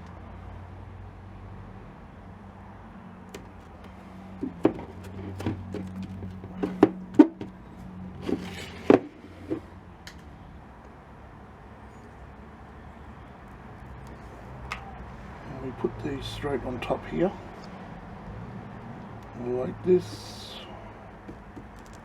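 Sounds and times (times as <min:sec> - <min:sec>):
clicks and knocks of small items: 0:21.2 - 0:22.0.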